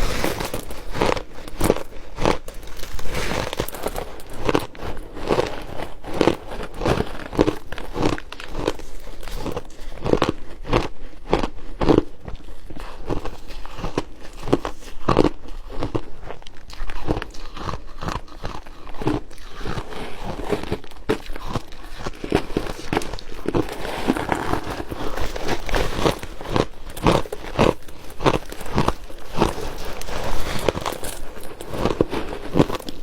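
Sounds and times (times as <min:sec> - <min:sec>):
ice crunching while chewed: 0:00.0 - 0:33.0.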